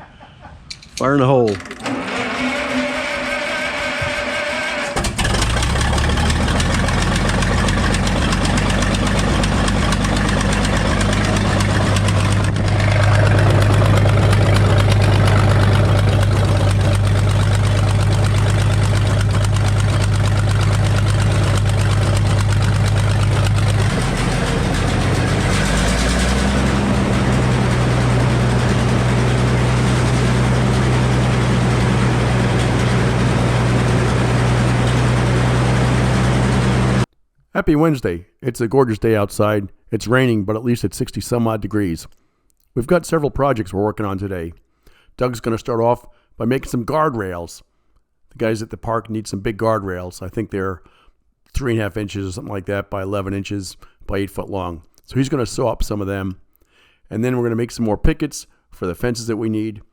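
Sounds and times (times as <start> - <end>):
engine running: 1.5 - 37.1
starter motor whine: 1.6 - 37.1.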